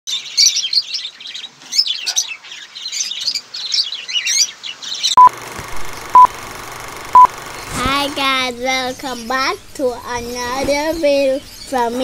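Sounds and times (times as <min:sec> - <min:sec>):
short electronic beep: 0:06.1 - 0:06.3, 0:07.1 - 0:07.3.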